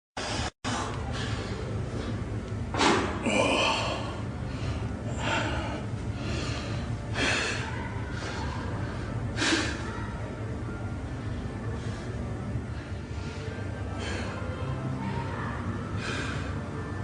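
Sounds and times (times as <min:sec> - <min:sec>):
steady low hum: 0:00.2 - 0:17.0
man breathing hard: 0:03.6 - 0:09.9, 0:15.9 - 0:16.8.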